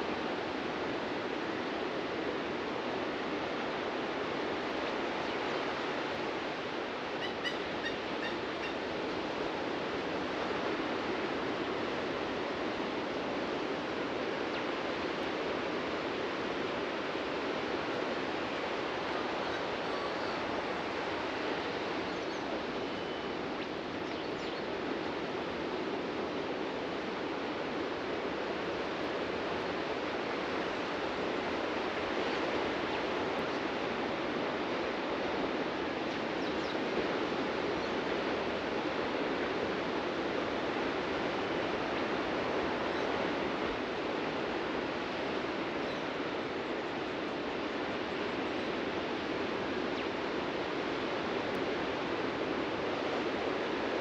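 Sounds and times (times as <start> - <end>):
ocean surf on a beach: 0.0 - 54.0
faint bird chirps: 22.1 - 23.4.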